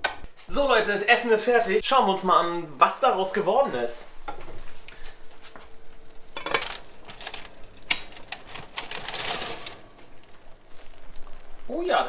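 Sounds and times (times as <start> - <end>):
kitchenware clicking and clinking: 6.4 - 9.9.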